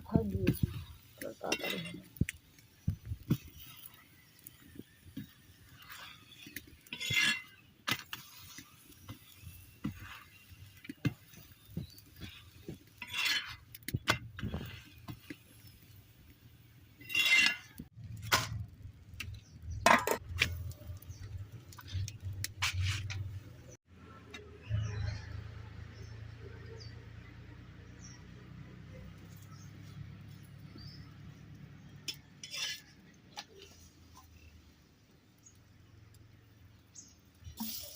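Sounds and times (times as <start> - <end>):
metal utensils clinking on cookware: 0.6 - 10.2, 17.0 - 17.8, 19.8 - 20.6.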